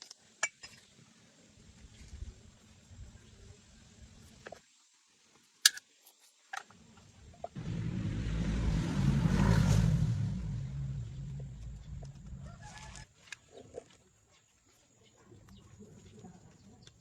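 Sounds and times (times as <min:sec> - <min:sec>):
motor vehicle passing by: 0:07.5 - 0:13.0.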